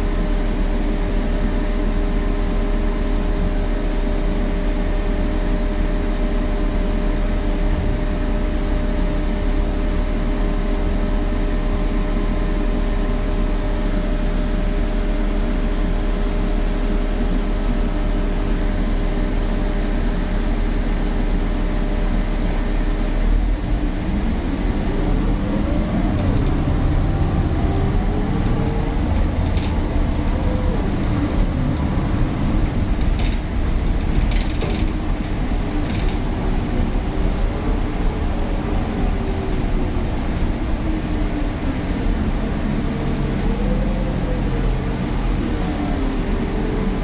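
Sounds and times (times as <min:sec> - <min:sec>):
bus engine hum: 0:00.0 - 0:47.0
road rumble: 0:00.0 - 0:47.0
bus bodywork rattling: 0:22.5 - 0:47.0.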